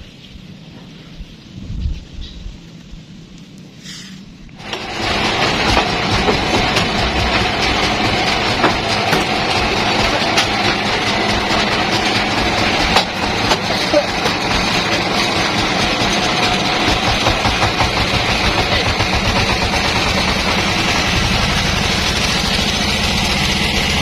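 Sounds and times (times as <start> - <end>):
mechanical knocks: 4.6 - 21.5
sawmill machinery running: 4.6 - 24.0.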